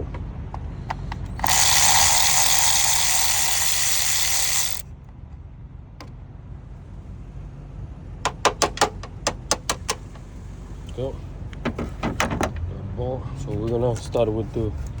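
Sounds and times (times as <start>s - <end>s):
hand ratchet clicking: 1.4s - 4.8s
power ratchet running: 1.4s - 4.8s.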